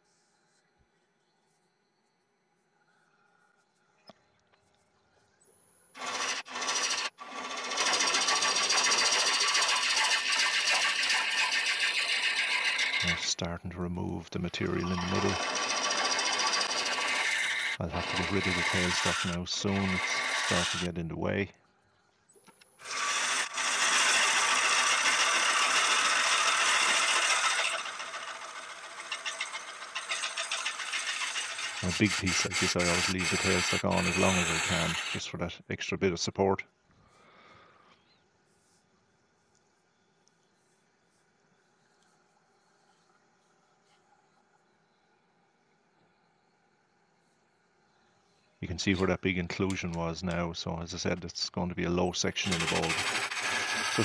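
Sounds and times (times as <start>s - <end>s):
lathe tool cutting wood: 6.0s - 21.0s, 22.8s - 35.3s, 52.2s - 54.0s.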